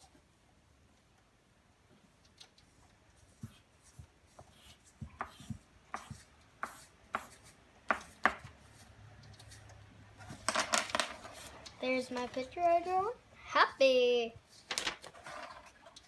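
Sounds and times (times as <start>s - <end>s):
pencil drawing on paper: 3.2s - 9.7s.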